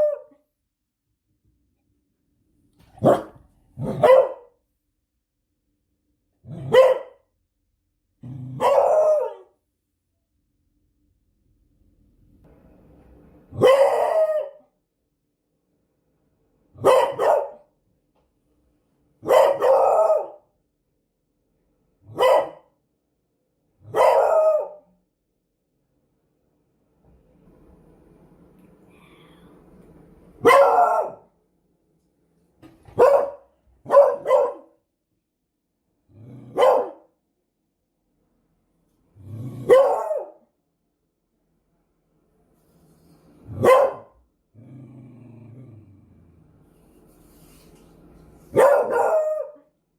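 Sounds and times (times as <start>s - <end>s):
dog barking: 3.0s - 4.6s, 6.5s - 7.3s, 8.6s - 9.6s, 13.6s - 14.6s, 16.8s - 17.7s, 19.2s - 20.5s, 22.1s - 22.8s, 23.9s - 24.9s, 30.4s - 31.3s, 32.9s - 34.8s, 36.5s - 37.1s, 39.6s - 40.5s, 43.6s - 44.2s, 48.5s - 49.7s.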